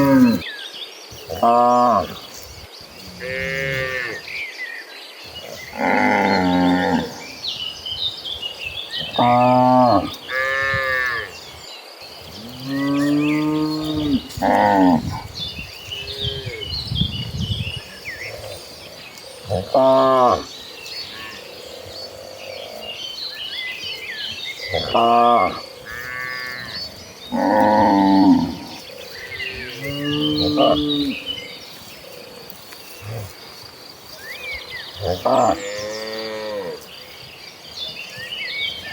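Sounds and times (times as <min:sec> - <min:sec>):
cattle mooing: 0:29.5 - 0:31.2.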